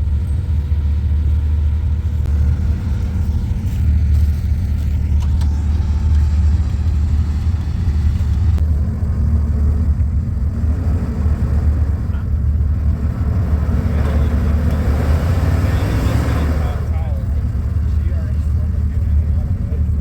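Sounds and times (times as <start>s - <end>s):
truck engine idling: 0.0s - 20.0s.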